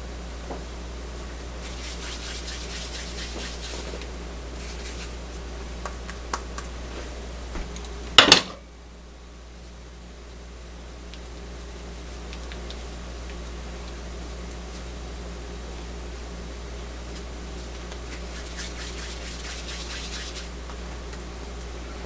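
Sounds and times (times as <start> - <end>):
light scratching strokes: 1.6 - 4.0, 4.6 - 5.2, 18.0 - 20.6.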